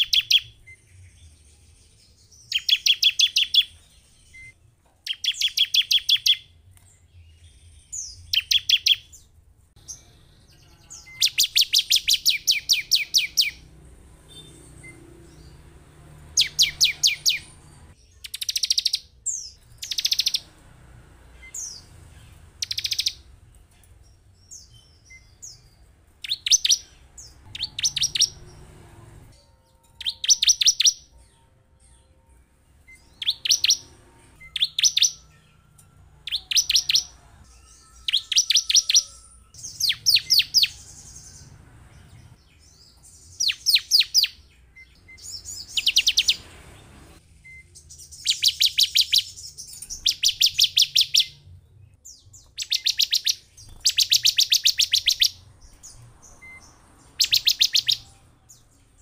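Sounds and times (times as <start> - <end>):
bird singing rapid ticking notes: 0.0 - 0.7, 2.5 - 6.5, 8.0 - 9.1, 11.0 - 20.6, 21.4 - 23.3, 24.6 - 28.6, 33.0 - 35.3, 47.4 - 51.4, 52.4 - 58.1.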